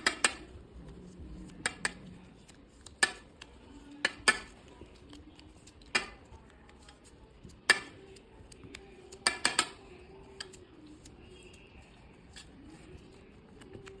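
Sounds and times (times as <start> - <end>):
utensil tapping against a bowl: 0.0 - 0.5, 4.0 - 4.5, 8.7 - 9.8.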